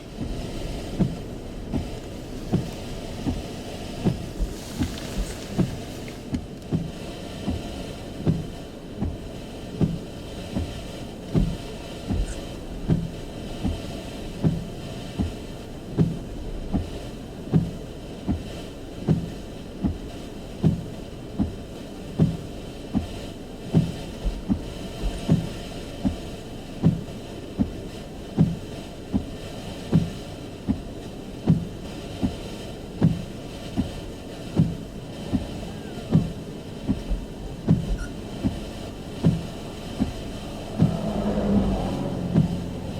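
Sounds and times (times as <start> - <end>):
low thumps: 0.0 - 10.8, 33.8 - 42.9
steady background noise: 0.0 - 42.9.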